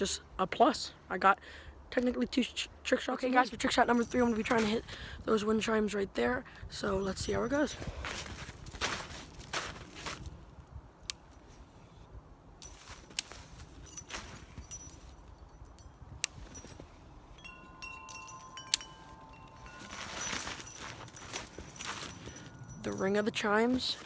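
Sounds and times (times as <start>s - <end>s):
wind chimes ringing: 3.6s - 4.9s, 13.8s - 24.0s.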